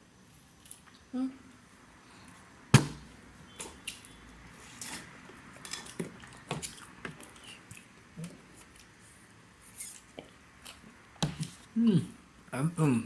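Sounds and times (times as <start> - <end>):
chewing food: 4.9 - 9.0.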